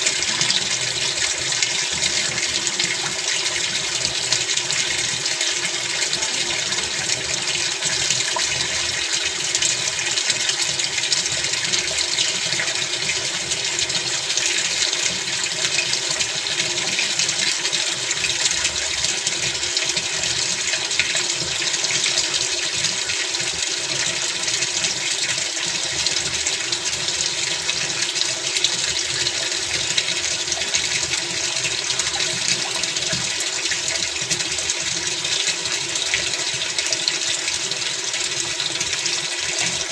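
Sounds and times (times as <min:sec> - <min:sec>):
water filling washing machine drum: 0:00.0 - 0:39.9.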